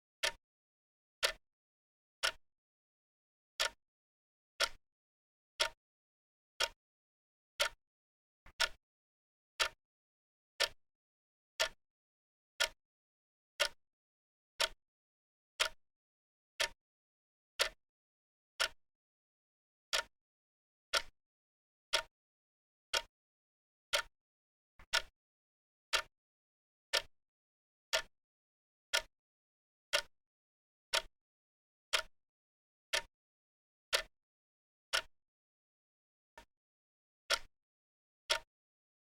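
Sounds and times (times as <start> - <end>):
clock ticking: 4.6 - 4.8, 8.5 - 8.8, 24.8 - 25.1, 30.9 - 31.1, 32.9 - 33.1, 34.9 - 35.1.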